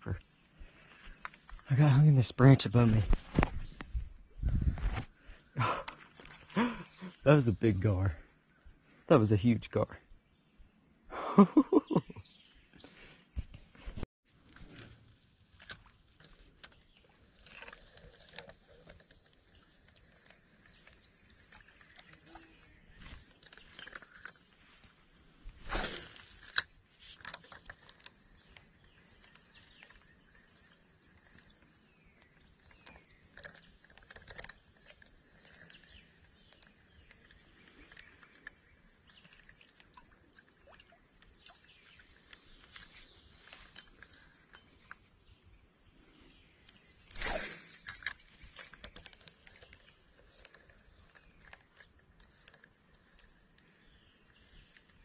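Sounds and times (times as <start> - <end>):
small clicks and rustles: 13.2 - 45.2, 46.6 - 55.0.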